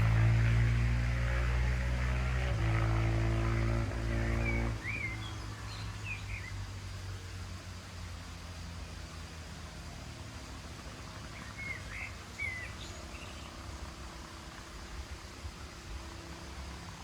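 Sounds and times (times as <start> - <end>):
motorcycle engine running: 0.0 - 5.4.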